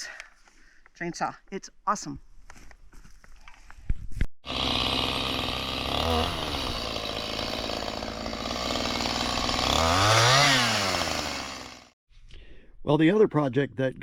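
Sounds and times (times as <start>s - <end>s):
chainsaw running and revving: 4.4s - 12.0s.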